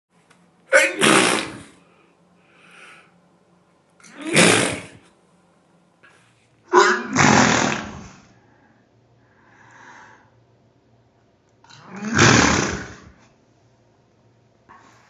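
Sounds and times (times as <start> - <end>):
woman sneezing loudly: 0.7 - 1.8, 4.1 - 5.0.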